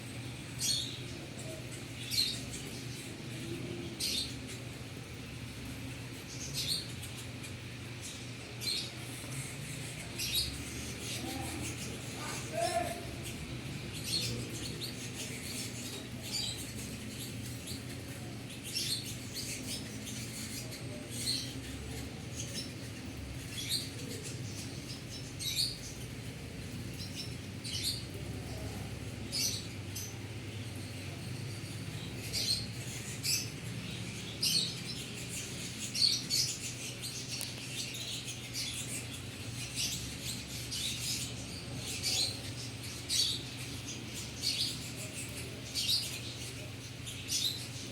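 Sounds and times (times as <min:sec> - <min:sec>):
canaries chirping: 0:00.0 - 0:47.9
steady low hum: 0:00.0 - 0:47.9.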